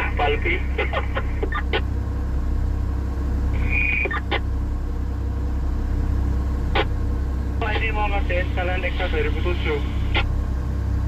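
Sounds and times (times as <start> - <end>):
vehicle engine idling: 0.0 - 11.0
short chirps: 3.6 - 4.3.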